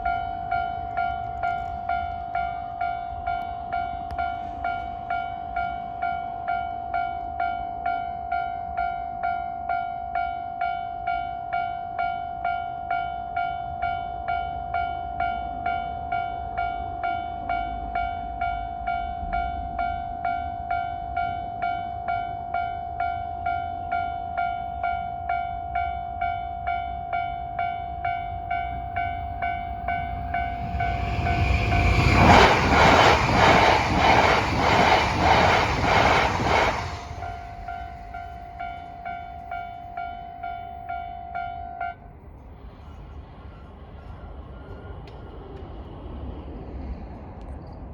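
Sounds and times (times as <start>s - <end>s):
level crossing warning bell: 0.0s - 32.3s, 36.8s - 42.1s
train passing: 0.0s - 47.9s.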